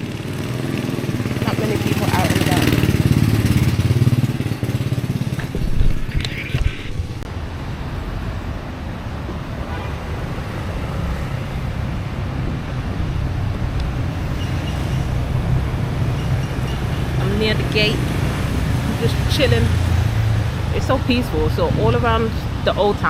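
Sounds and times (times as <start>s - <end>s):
motorbike engine: 0.0s - 7.3s, 10.5s - 20.8s
low traffic rumble: 0.0s - 23.0s.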